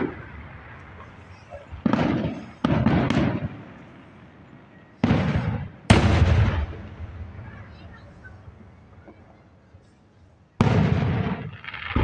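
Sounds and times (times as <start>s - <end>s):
sudden loud bangs: 5.1s - 7.0s.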